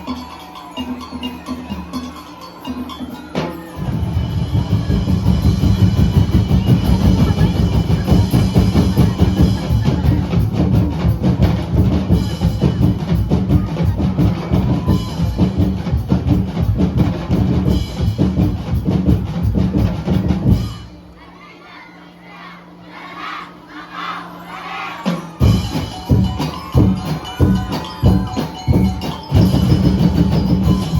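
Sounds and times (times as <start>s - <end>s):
crowd voices and shouts: 0.0s - 30.9s
bass and snare drumming: 3.2s - 21.1s, 25.0s - 30.9s.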